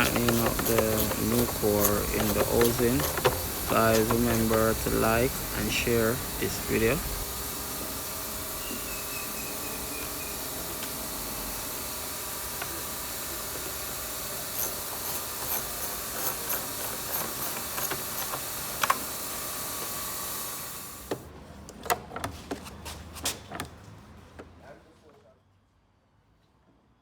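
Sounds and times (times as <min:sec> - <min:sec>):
steady hiss: 0:00.0 - 0:21.0.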